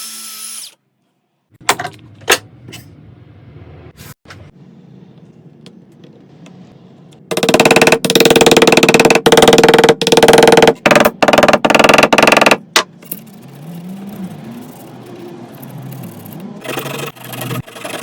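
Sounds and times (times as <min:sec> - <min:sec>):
hand saw cutting wood: 0:16.6 - 0:18.0.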